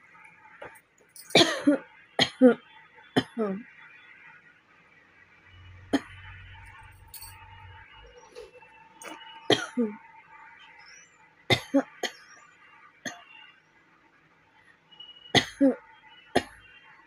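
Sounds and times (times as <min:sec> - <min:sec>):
woman coughing: 0:01.3 - 0:02.6, 0:09.5 - 0:10.0, 0:11.5 - 0:12.2, 0:15.4 - 0:15.8.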